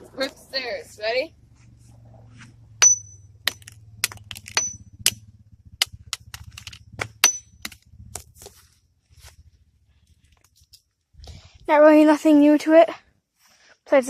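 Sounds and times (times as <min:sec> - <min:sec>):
hammer striking phone on brick: 0:02.8 - 0:05.2, 0:05.8 - 0:07.8.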